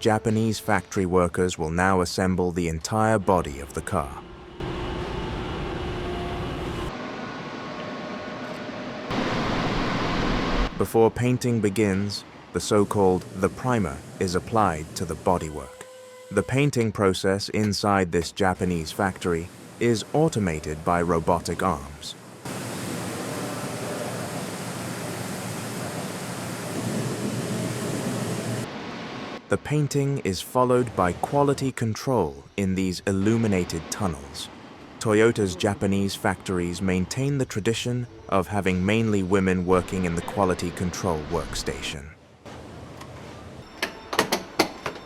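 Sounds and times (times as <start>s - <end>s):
steady air hiss: 12.1s - 16.4s, 18.4s - 28.7s.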